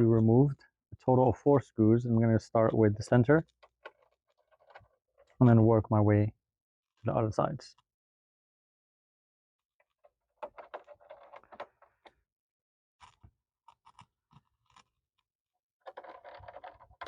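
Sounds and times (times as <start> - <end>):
plastic cover scraping and clicking: 15.9 - 17.0.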